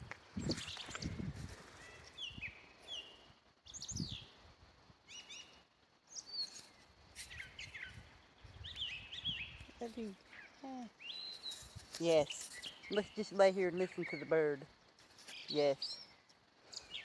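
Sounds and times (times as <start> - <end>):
songbird chirping and whistling: 0.4 - 4.4, 5.1 - 14.5.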